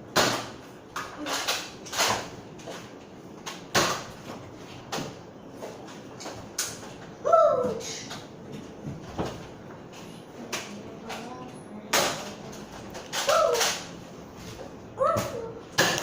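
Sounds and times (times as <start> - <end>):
child shouting woo: 7.3 - 7.8.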